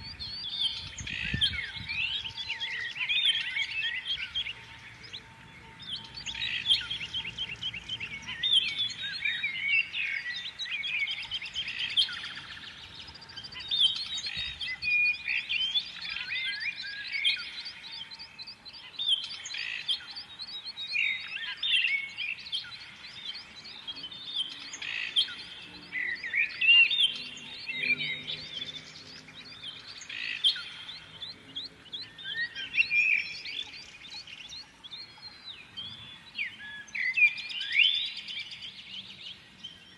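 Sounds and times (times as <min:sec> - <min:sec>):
fast repeated bird trill: 0:00.0 - 0:16.0
songbirds chorus: 0:00.0 - 0:39.9.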